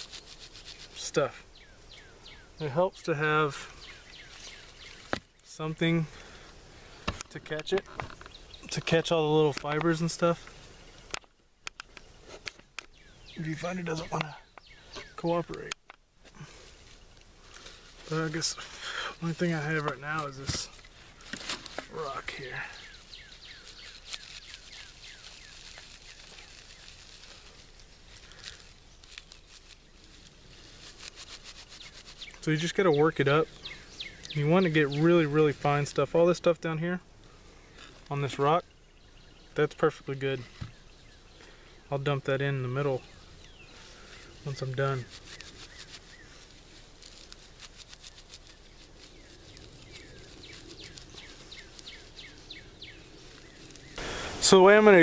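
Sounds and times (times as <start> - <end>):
bark being rubbed and shredded: 0.0 - 1.2, 16.4 - 36.0, 42.4 - 55.0
bird chirping: 0.0 - 15.8, 16.4 - 36.6, 37.2 - 55.0
bark being torn by hand: 45.0 - 52.0.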